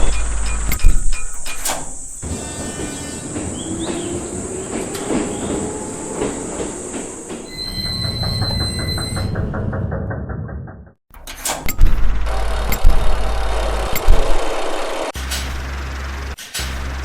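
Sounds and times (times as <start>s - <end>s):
train wheels rumbling on rails: 0.0s - 11.0s.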